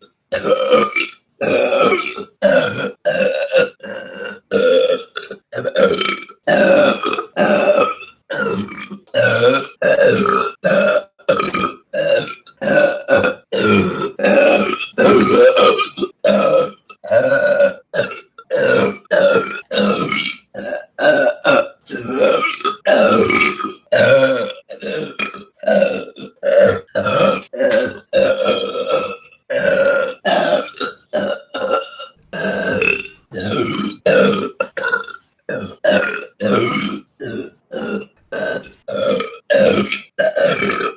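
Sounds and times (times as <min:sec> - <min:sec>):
woman burping: 0:00.3 - 0:40.9.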